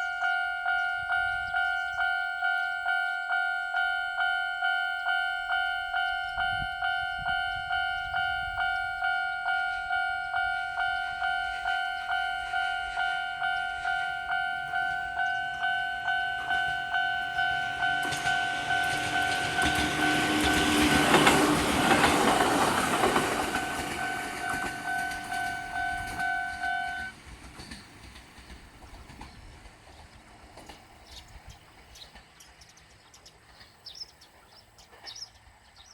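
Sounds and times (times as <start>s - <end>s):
level-crossing alarm dinging: 0.0s - 27.2s
train wheels on rails: 0.0s - 35.9s.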